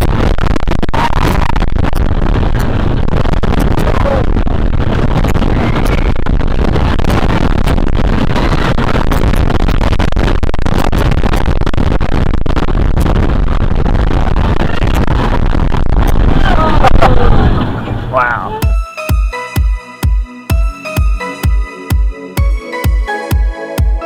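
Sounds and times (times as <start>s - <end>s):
wind rush over microphone: 0.0s - 18.1s.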